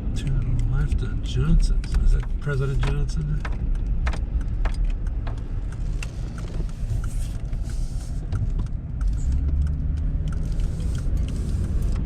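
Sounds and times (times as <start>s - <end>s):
car engine and tyre rumble: 0.0s - 12.0s
faint ticks: 1.9s - 12.0s.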